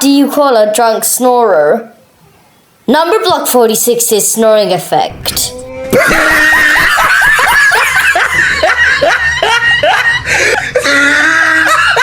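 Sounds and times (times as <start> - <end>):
steady low drone: 5.0 - 7.8.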